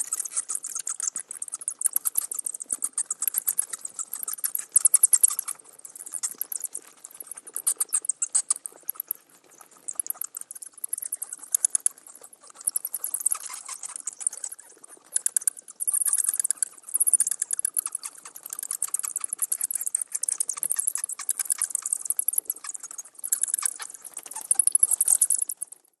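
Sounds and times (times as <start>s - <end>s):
bats chattering: 12.6s - 25.6s.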